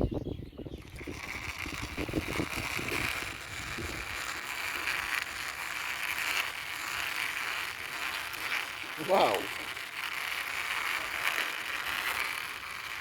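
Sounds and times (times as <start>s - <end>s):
toy car wheels rattling: 0.8s - 13.0s.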